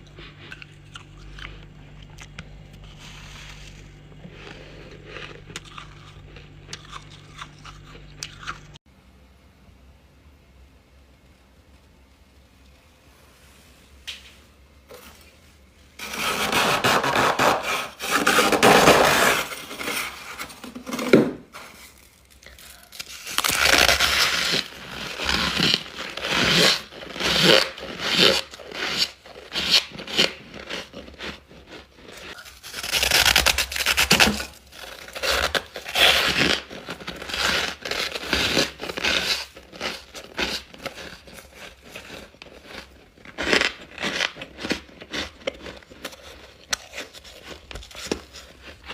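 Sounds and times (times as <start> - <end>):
chewing crunchy ice: 0.0 - 8.8, 21.9 - 48.9.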